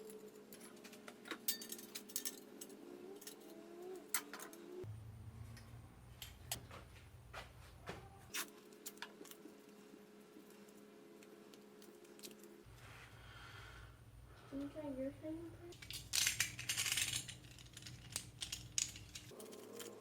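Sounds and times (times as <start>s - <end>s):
low steady hum: 4.8s - 19.4s.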